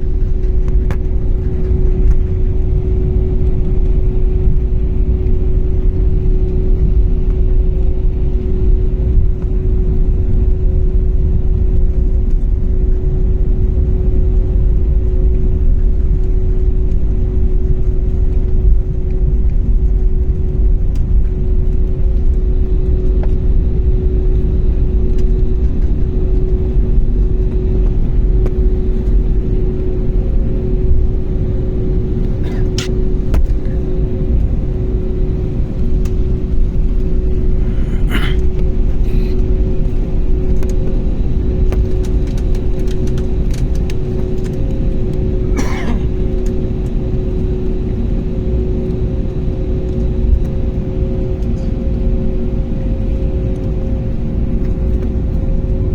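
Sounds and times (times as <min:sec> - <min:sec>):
jet engine drone in cabin: 0:00.0 - 0:55.9.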